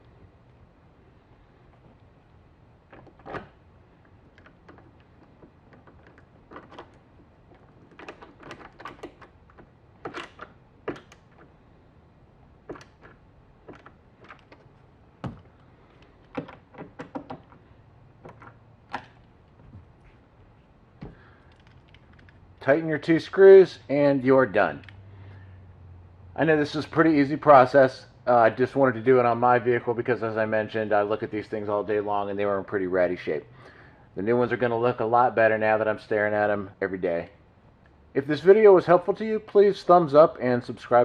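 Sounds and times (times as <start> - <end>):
clicks and knocks of tools on plastic: 12.7 - 17.6.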